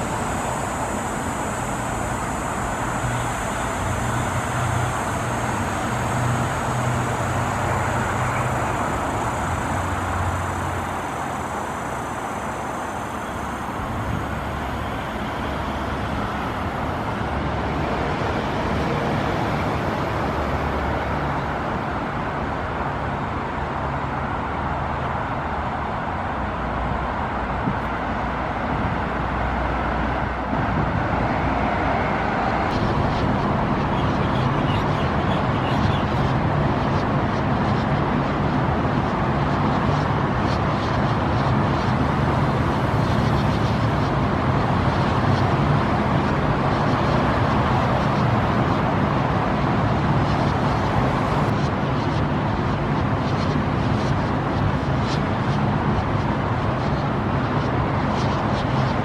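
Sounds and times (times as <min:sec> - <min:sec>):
thin high-pitched whine: 0:00.0 - 0:22.2
expressway traffic rushing: 0:00.0 - 0:59.0.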